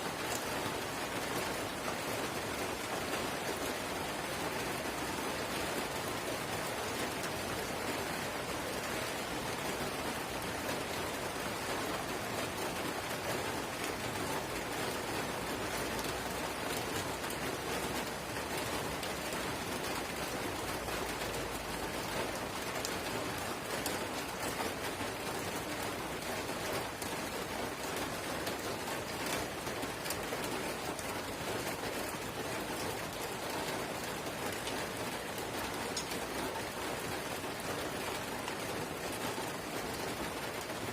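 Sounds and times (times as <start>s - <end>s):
light drizzle pattering: 18.0s - 40.9s.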